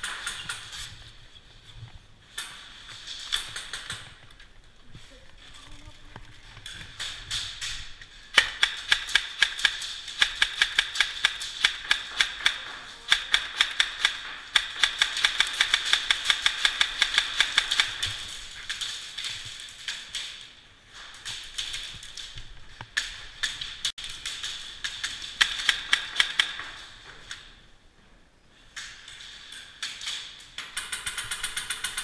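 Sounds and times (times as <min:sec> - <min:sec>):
airsoft guns firing: 0:08.3 - 0:19.1, 0:23.0 - 0:27.0.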